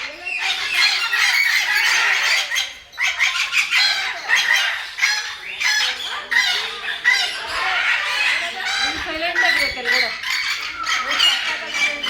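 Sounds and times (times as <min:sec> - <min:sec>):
birds calling: 0:00.0 - 0:12.0.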